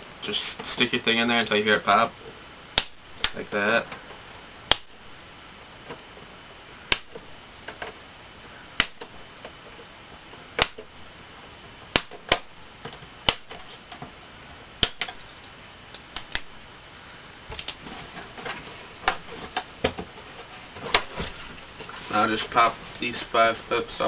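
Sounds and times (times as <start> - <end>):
plastic clips snapping loose: 14.8 - 17.8.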